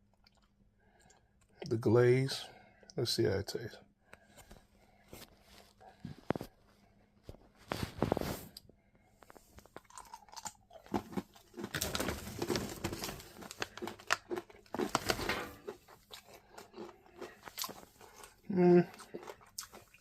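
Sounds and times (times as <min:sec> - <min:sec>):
person crunching nuts: 0:09.2 - 0:20.0.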